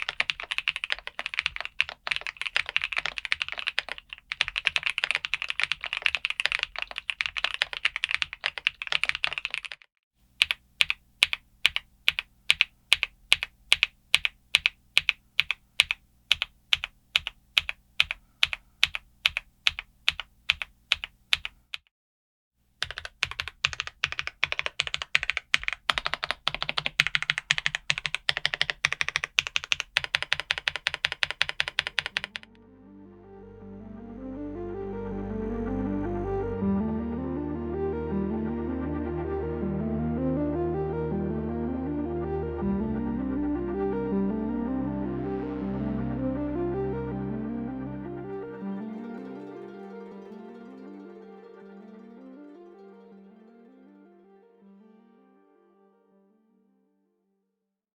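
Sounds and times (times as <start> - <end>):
mechanical keyboard typing: 0.0 - 21.9, 22.8 - 32.5
music: 32.5 - 57.5.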